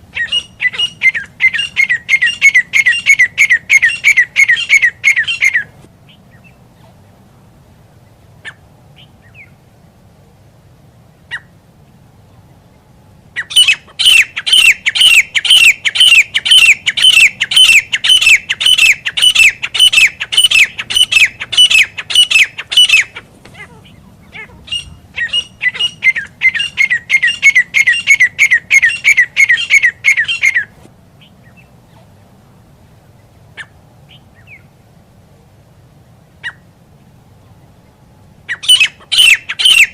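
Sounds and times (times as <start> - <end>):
bird rapid sharp calls: 0.1 - 6.6, 13.4 - 31.7, 38.5 - 39.9.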